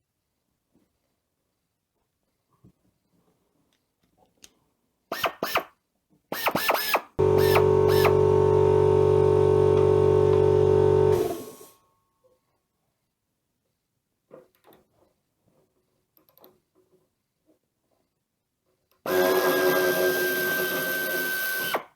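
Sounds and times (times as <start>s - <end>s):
air tool motor whining: 6.3s - 11.7s, 19.1s - 21.9s.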